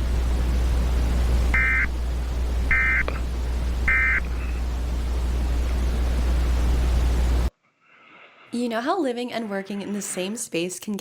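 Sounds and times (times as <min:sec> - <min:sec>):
steady low hum: 0:00.0 - 0:07.5.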